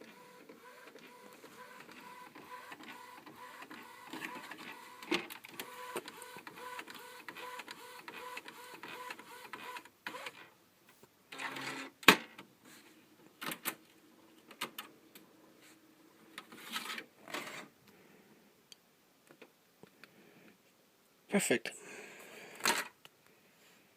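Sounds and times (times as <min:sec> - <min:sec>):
inkjet printer running: 0:00.0 - 0:10.3
printer whir: 0:00.0 - 0:10.4.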